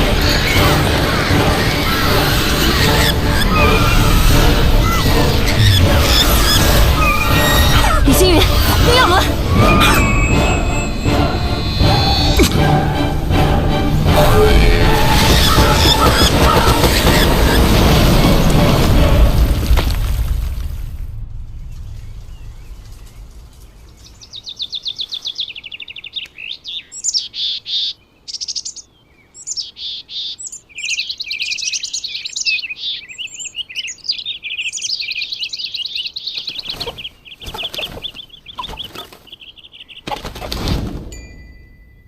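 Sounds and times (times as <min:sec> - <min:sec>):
small birds chirping and trilling: 0:00.0 - 0:12.4, 0:21.6 - 0:40.6.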